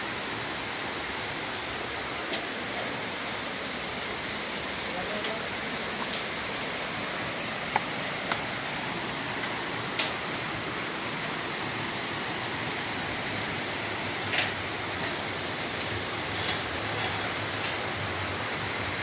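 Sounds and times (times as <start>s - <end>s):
falling water rushing: 0.0s - 19.0s.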